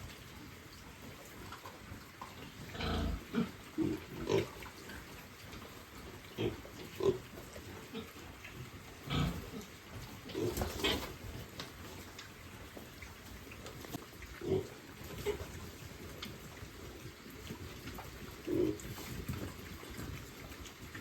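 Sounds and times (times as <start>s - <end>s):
piglets grunting: 2.7s - 4.6s, 9.0s - 11.2s.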